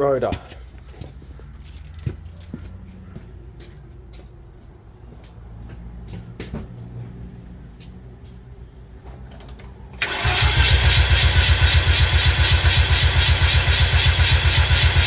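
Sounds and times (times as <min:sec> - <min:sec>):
engine turning over on starter: 0:10.0 - 0:15.0.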